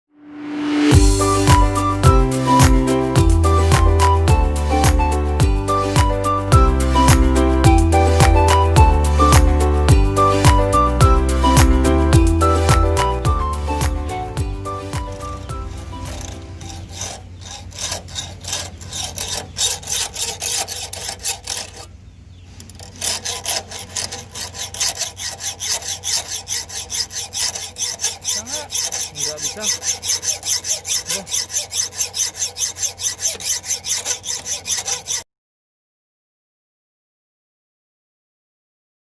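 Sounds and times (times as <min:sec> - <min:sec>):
hand tool rasping on padlock: 0:14.9 - 0:21.9, 0:22.6 - 0:35.2.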